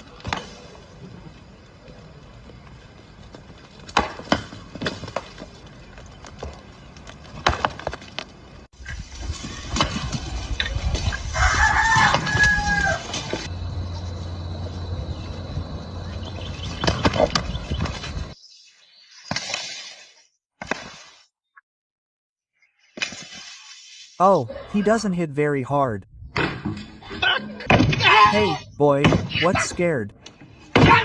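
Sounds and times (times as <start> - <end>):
rooster crowing: 11.3 - 13.2.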